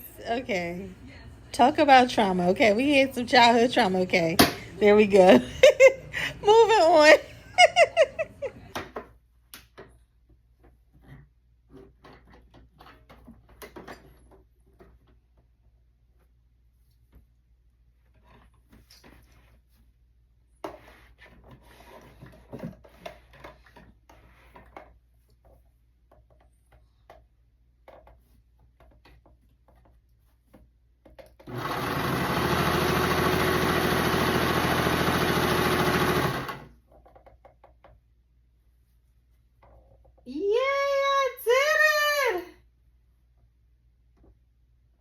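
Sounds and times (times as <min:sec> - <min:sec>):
sewing machine running: 0:31.5 - 0:36.7.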